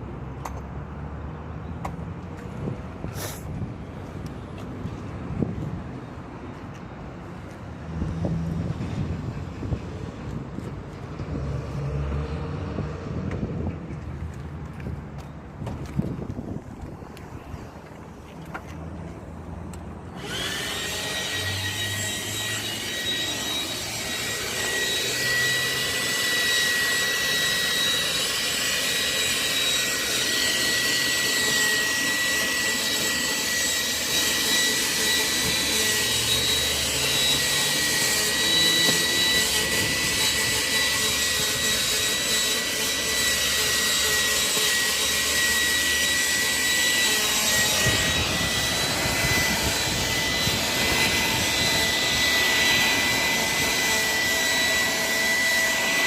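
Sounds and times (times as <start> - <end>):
vacuum cleaner running: 20.2 - 56.0.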